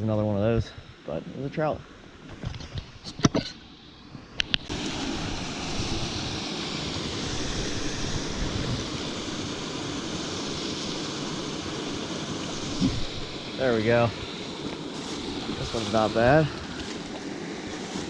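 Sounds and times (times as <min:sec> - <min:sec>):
creek water running: 0:04.4 - 0:18.0.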